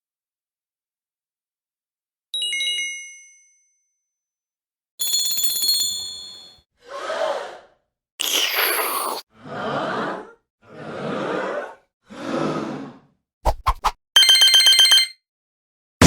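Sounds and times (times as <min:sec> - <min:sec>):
bell ringing rapidly: 0:05.0 - 0:06.6, 0:14.2 - 0:15.1.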